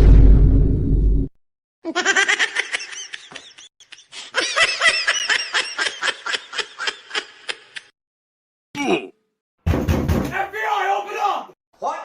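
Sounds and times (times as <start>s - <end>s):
high-pitched laughter: 1.9s - 7.9s.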